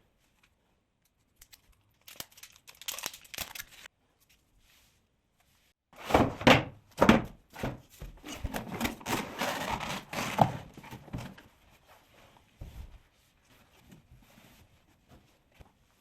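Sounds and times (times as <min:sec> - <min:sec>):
packaging rustling: 0:02.0 - 0:03.9.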